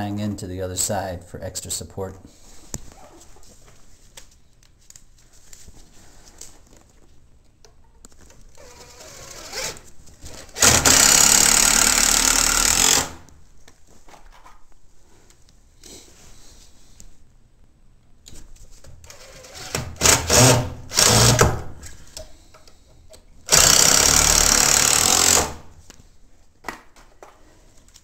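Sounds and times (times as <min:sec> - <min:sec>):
power drill driving screw: 0:08.6 - 0:13.3, 0:19.1 - 0:21.5, 0:23.5 - 0:25.7.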